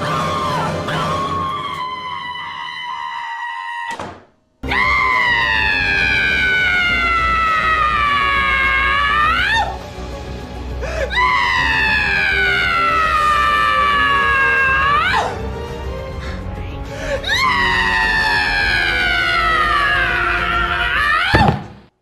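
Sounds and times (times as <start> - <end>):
man screaming: 4.6 - 9.8, 11.1 - 15.4, 17.2 - 21.5.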